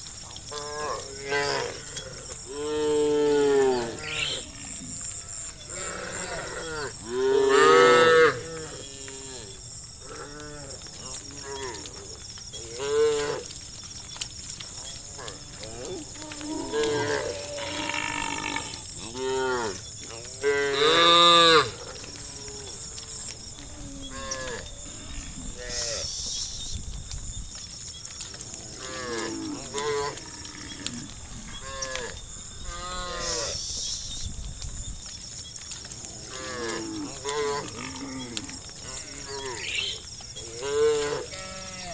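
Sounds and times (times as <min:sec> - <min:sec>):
cows mooing: 0:00.8 - 0:09.5, 0:36.4 - 0:41.9.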